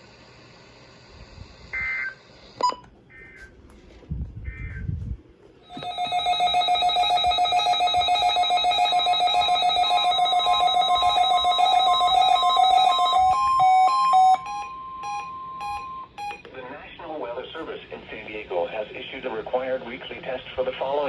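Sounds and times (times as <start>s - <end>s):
higher on-off beep: 1.8s - 3.3s, 5.7s - 16.5s
pulsing buzzy electronic tone: 5.7s - 14.6s.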